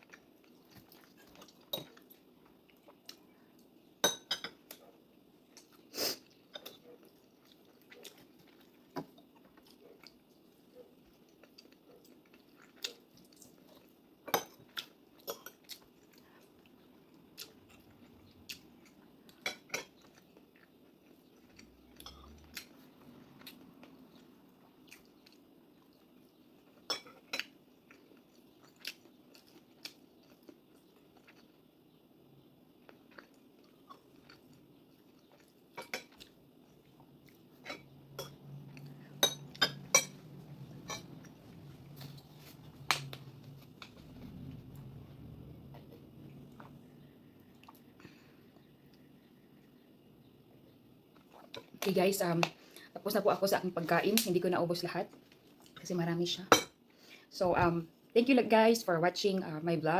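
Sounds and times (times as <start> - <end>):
person chewing: 0.0 - 3.3, 5.5 - 14.0, 14.6 - 31.6, 32.8 - 49.1
cutlery clinking on a dish: 4.0 - 4.6, 39.2 - 40.2.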